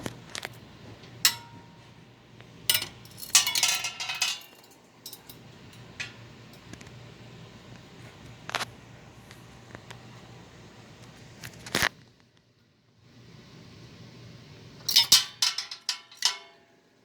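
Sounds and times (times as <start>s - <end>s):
metal parts clinking and rattling: 2.7s - 6.2s, 14.9s - 16.6s.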